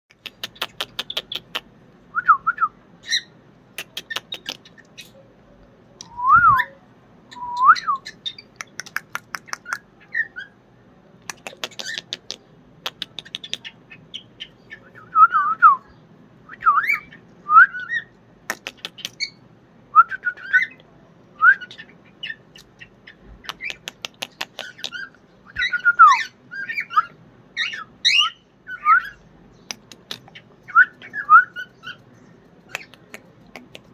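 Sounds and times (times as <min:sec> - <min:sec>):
sharp bird clicks: 0:00.1 - 0:01.7, 0:03.8 - 0:05.2, 0:08.0 - 0:09.9, 0:11.2 - 0:13.8, 0:18.4 - 0:19.3, 0:22.5 - 0:25.8, 0:29.6 - 0:33.9
cockatiel whistling: 0:06.1 - 0:08.2.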